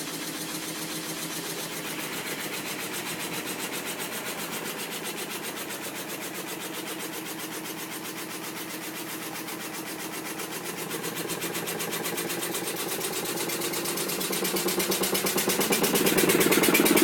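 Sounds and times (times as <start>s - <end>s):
fast pulsing mechanical noise: 0.0s - 17.0s.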